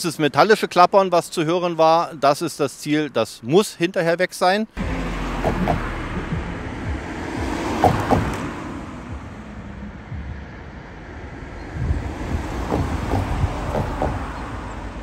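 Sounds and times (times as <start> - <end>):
road traffic passing: 4.7 - 15.0.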